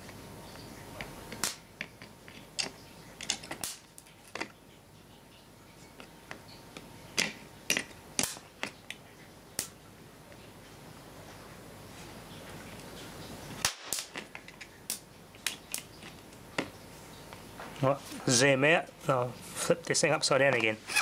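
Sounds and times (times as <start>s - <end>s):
electric sparks snapping: 1.4s - 1.6s, 3.5s - 4.0s, 8.2s - 8.5s, 9.6s - 9.8s, 13.6s - 14.3s.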